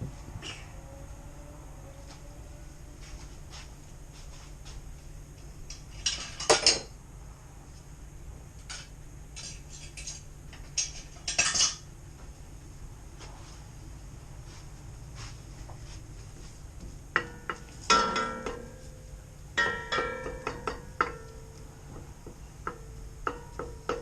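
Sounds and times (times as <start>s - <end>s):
cookware clinking and knocking: 6.0s - 6.9s, 17.2s - 18.6s, 19.6s - 21.2s.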